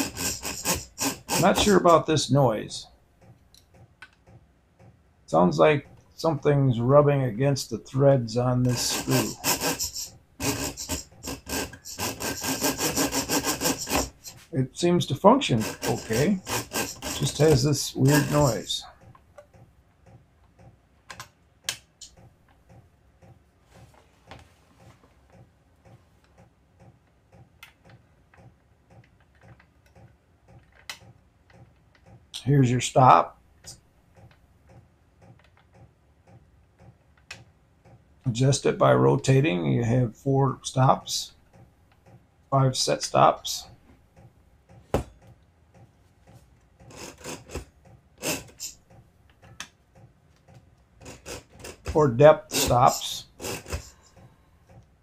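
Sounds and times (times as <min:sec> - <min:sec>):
scraping rasping strokes: 0:00.0 - 0:02.2, 0:08.4 - 0:14.6, 0:15.4 - 0:19.1, 0:46.3 - 0:49.0, 0:51.0 - 0:54.4.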